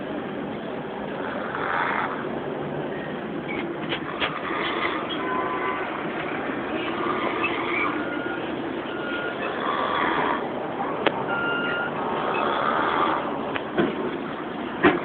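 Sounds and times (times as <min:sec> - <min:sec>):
traffic noise: 0:00.0 - 0:15.0
short beeps: 0:11.3 - 0:12.0
man snoring: 0:12.2 - 0:13.3.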